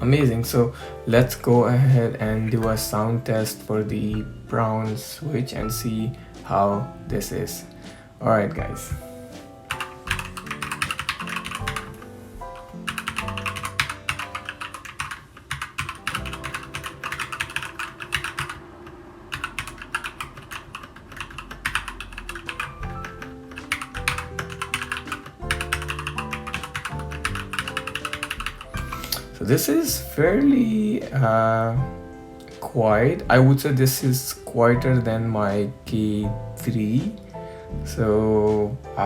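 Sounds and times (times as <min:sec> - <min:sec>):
background music: 0:00.0 - 0:39.0
mechanical keyboard typing: 0:09.7 - 0:12.1, 0:12.9 - 0:28.8.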